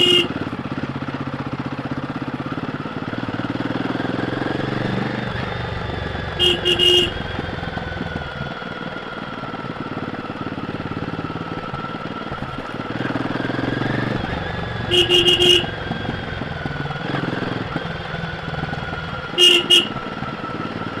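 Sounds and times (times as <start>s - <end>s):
horn beeps: 0.0s - 0.4s, 6.3s - 7.4s, 14.8s - 15.9s, 19.3s - 20.0s
motorcycle engine running: 0.0s - 21.0s.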